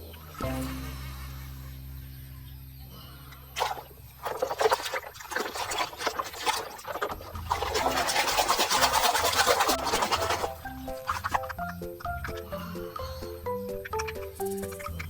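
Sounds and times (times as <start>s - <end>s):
water splashing and trickling: 0.0s - 1.4s, 2.9s - 15.0s
low steady tone: 0.0s - 4.2s.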